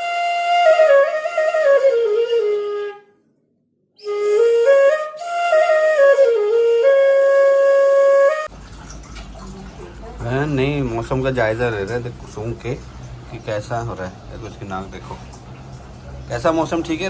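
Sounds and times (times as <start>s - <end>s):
flute melody: 0.0s - 3.3s, 4.0s - 8.5s.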